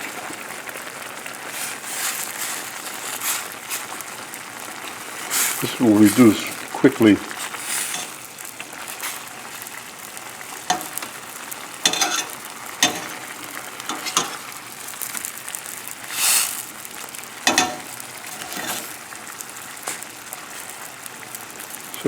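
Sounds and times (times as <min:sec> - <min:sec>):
sauce sizzling in a pan: 0:00.0 - 0:22.0
utensil scraping a pan: 0:01.5 - 0:04.0, 0:05.1 - 0:06.6, 0:07.2 - 0:09.4, 0:10.5 - 0:15.2, 0:16.0 - 0:16.7, 0:17.5 - 0:19.2.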